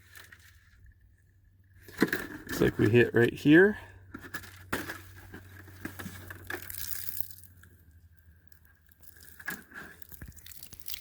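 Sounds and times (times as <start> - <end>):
plastic jug crinkling: 4.1 - 11.0.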